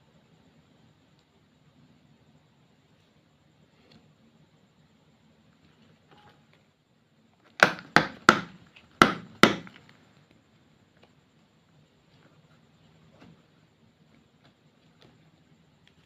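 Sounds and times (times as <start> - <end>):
sharp knocks: 7.6 - 9.8
faint handling noise: 9.7 - 16.0.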